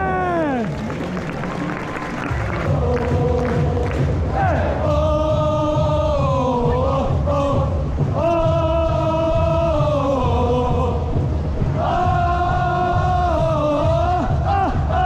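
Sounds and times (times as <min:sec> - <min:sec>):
steady drum beat: 0:02.3 - 0:15.0
voices singing held notes: 0:02.5 - 0:15.0.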